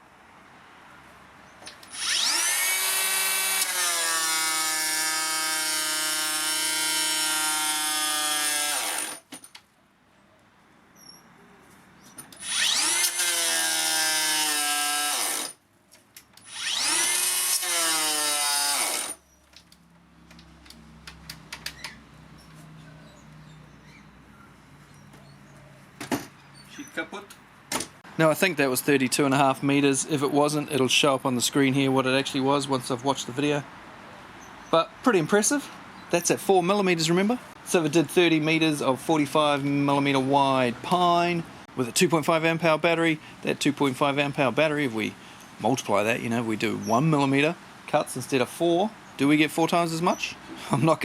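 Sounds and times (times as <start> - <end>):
electric planer whining: 1.9 - 9.1, 12.4 - 15.4, 16.5 - 19.1.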